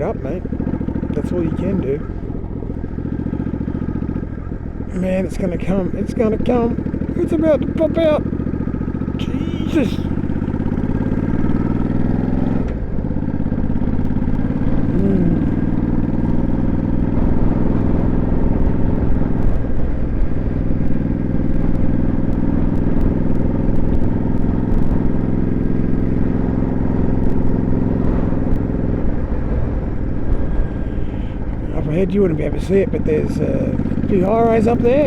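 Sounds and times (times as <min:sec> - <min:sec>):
motorcycle engine running: 0:00.0 - 0:35.0
wind and road noise: 0:00.0 - 0:35.0.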